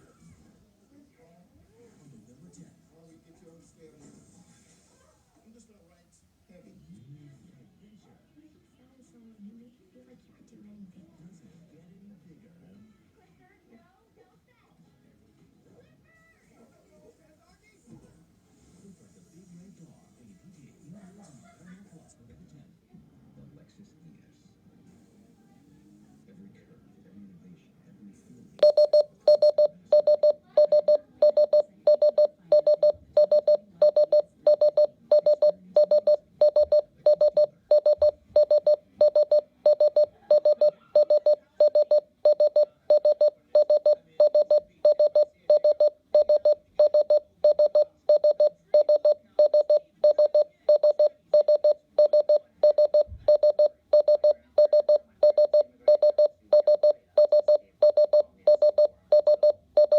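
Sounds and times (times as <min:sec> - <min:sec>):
electronic alarm beeping: 0:28.6 - 0:59.9.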